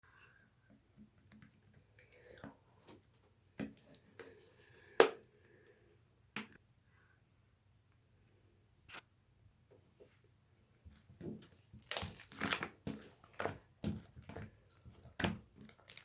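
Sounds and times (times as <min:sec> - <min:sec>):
slime squished by hand: 0:11.4 - 0:16.0.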